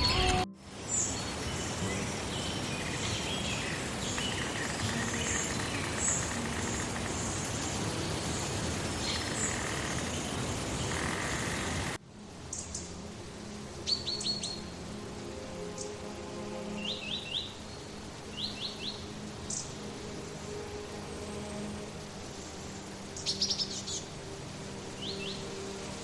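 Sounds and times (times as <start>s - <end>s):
small birds chirping: 0.0s - 12.9s
outdoor background hiss: 0.0s - 26.0s.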